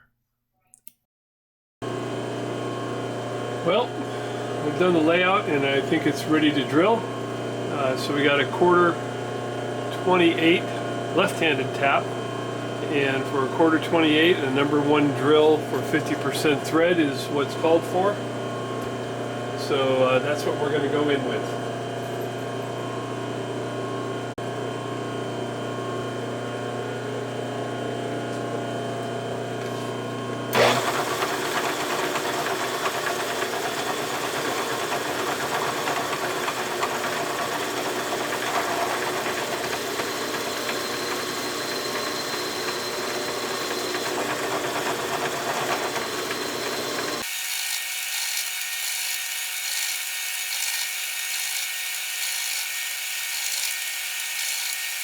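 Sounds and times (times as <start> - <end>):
milling machine drilling: 1.9 - 23.1, 27.0 - 55.0.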